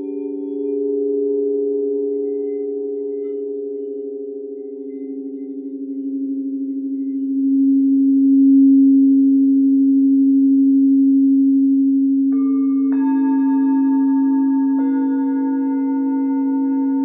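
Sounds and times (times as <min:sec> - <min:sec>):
singing bowls ringing: 0:00.0 - 0:08.8, 0:12.3 - 0:17.0.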